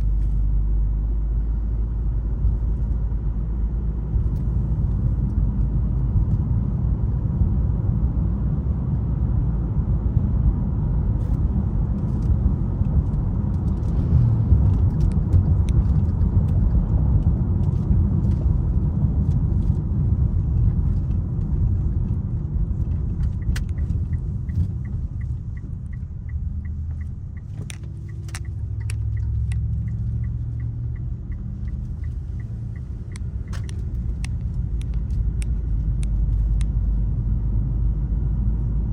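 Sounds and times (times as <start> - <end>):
car cabin road rumble: 0.0 - 38.9
turn signal ticking: 20.7 - 36.9.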